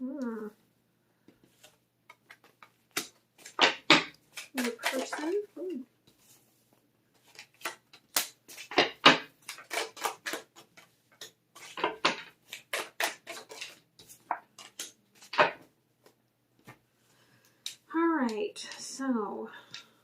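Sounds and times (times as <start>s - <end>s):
cards snapping and tapping: 1.6s - 5.4s, 7.2s - 16.8s.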